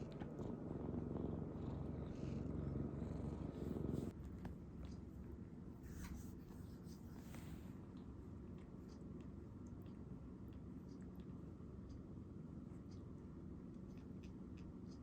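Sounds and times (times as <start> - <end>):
cat purring: 0.0 - 4.2.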